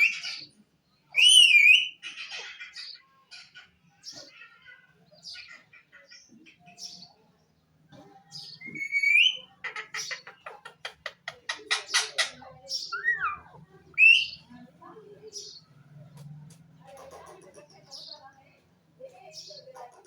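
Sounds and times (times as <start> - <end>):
parrot chirping and squawking: 8.6 - 14.4.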